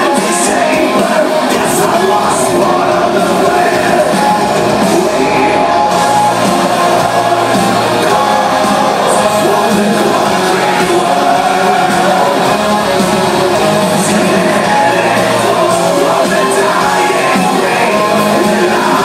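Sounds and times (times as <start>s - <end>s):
distorted electric guitars: 0.0s - 19.0s
drums: 0.0s - 19.0s
person singing: 0.0s - 19.0s.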